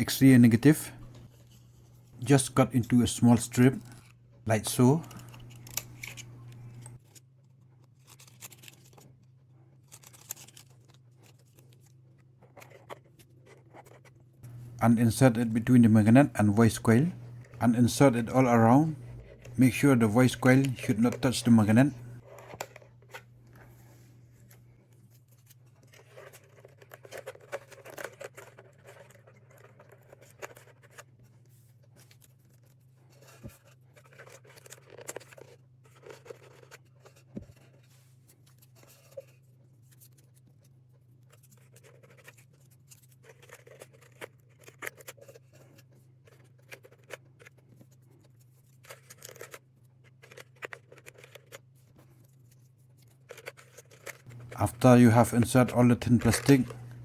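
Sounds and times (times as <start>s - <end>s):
steady low hum: 0.0s - 7.0s, 14.4s - 24.8s, 54.3s - 57.0s
plastic strips scratching and rustling: 4.6s - 23.3s, 25.0s - 57.0s.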